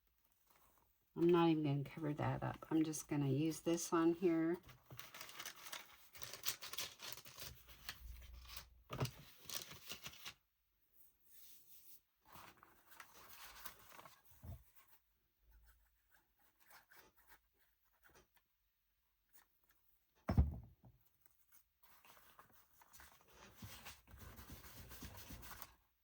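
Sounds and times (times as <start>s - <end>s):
paper and card rustling: 3.4s - 10.4s, 12.2s - 15.0s, 21.4s - 25.8s
soft knock: 20.3s - 20.8s.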